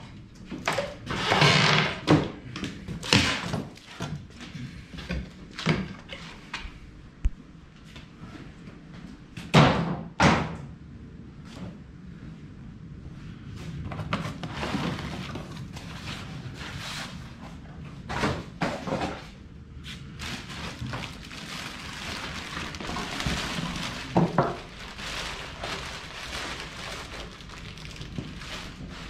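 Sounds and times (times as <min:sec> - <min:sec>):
packaging rustling: 0:20.1 - 0:29.0.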